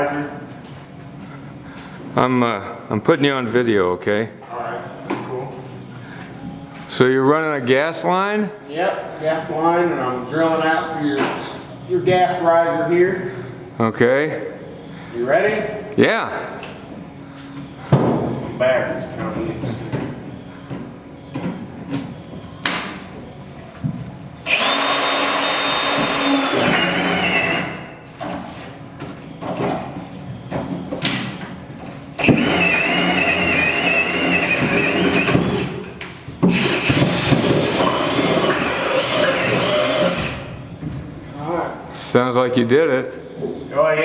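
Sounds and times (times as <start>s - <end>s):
power drill whining under load: 24.4s - 27.9s, 32.2s - 35.8s, 36.5s - 40.4s.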